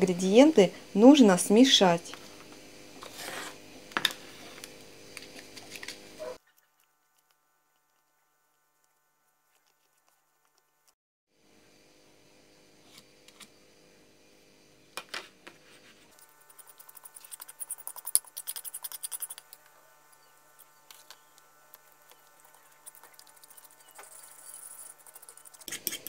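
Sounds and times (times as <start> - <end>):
spoon clicking and scraping in dish: 22.8 - 26.0.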